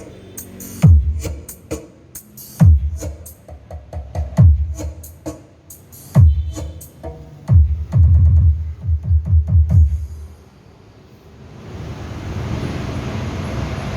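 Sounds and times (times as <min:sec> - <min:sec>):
electronic music with deep bass hits: 0:00.0 - 0:05.3, 0:06.0 - 0:10.3
rushing background noise: 0:00.0 - 0:13.9.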